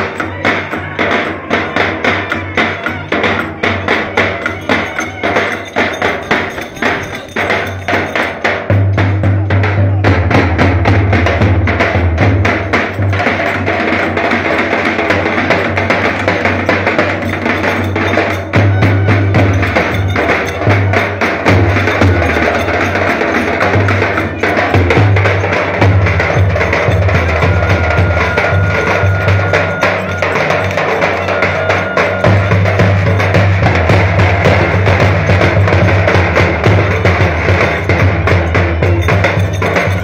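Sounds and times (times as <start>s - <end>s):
rapid clicking percussion: 0.0s - 40.0s
bass drum beating: 1.4s - 40.0s.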